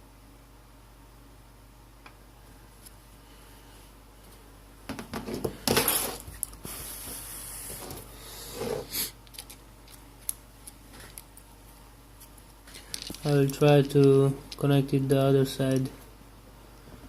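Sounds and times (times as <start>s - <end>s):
small parts clicking and rustling: 9.2s - 11.5s, 12.2s - 15.0s.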